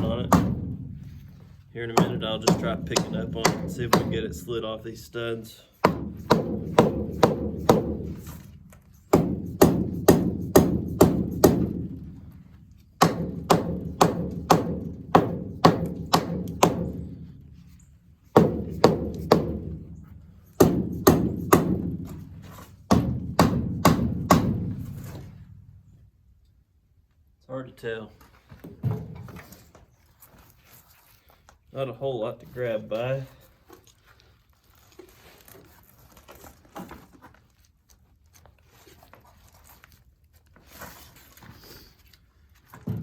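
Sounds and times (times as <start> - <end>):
hammer tapping on metal: 2.0 - 4.2.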